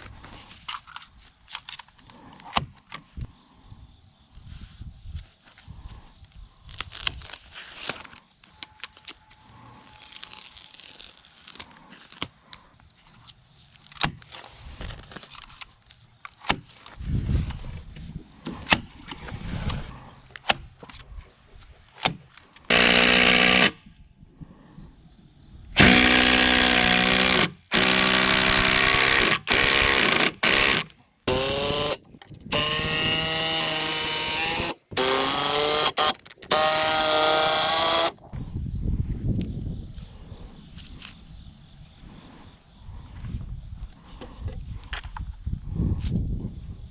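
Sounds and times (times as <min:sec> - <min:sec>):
power drill driving screws: 0:22.7 - 0:23.8, 0:25.8 - 0:38.2.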